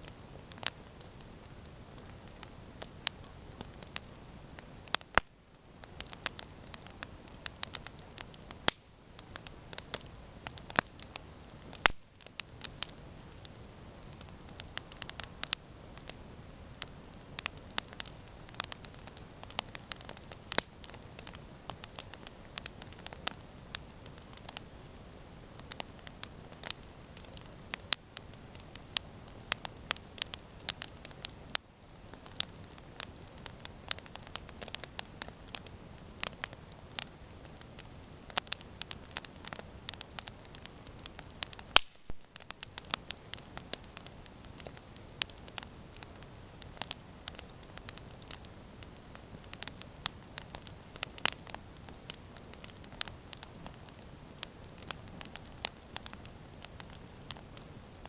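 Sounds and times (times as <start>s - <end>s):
campfire crackling: 0.0s - 58.0s
low steady hiss: 0.0s - 58.0s.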